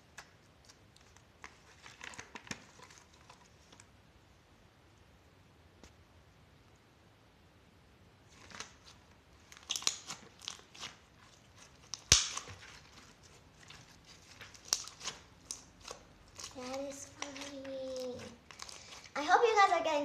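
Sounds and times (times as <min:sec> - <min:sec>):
slime crackling and popping: 0:08.3 - 0:19.7
loud slime pop: 0:12.0 - 0:12.6.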